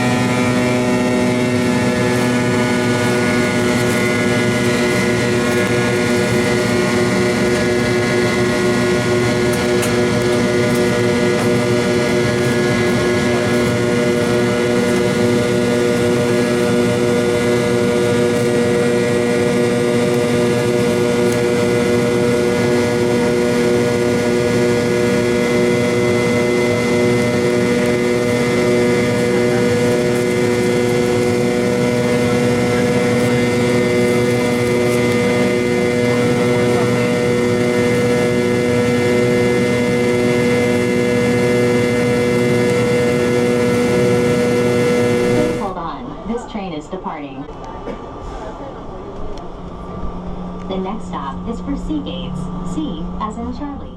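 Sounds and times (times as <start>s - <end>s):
jet engine drone in cabin: 0.0s - 53.9s.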